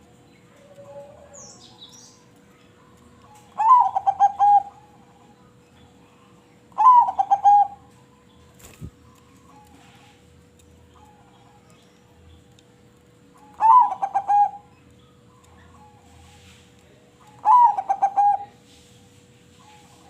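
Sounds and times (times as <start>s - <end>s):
dove cooing: 3.3s - 5.2s, 6.7s - 7.9s, 13.4s - 14.7s, 17.4s - 18.6s.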